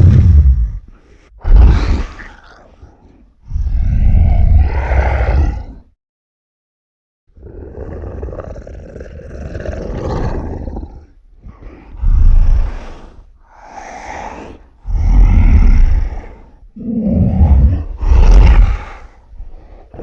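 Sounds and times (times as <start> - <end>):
monster roars: 3.5 - 5.8, 16.8 - 19.1.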